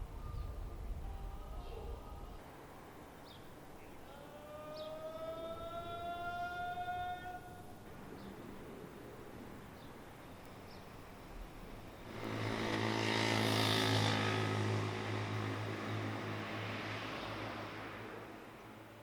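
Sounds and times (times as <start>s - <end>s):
vehicle engine passing: 12.0s - 18.8s.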